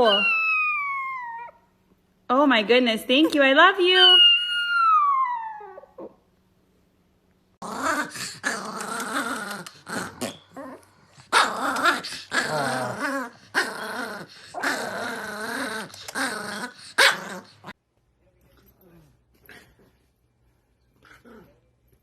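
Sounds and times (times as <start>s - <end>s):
dog growling: 7.6s - 17.8s.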